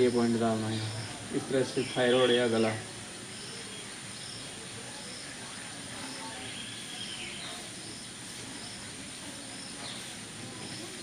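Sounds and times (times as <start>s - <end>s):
high insect-like hiss: 0.0s - 11.0s
bird chirps: 6.0s - 8.8s.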